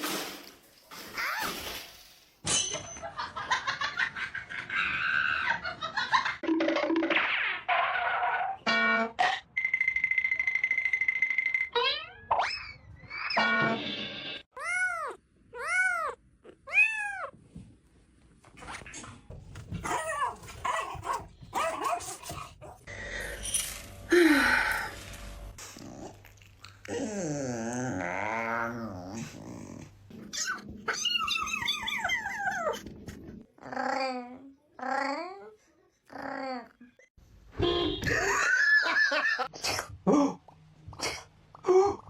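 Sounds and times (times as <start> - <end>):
cats and dogs crying: 14.6 - 17.4, 19.8 - 22.7, 30.3 - 32.9.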